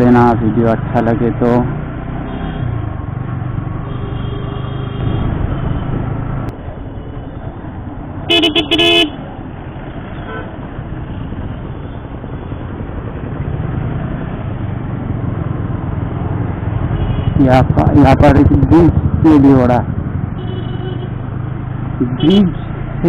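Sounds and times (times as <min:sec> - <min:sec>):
motorcycle road noise: 0:00.0 - 0:23.0
wind rush: 0:05.0 - 0:06.5
vehicle horn toots: 0:08.3 - 0:09.2, 0:16.9 - 0:17.5, 0:20.4 - 0:21.2.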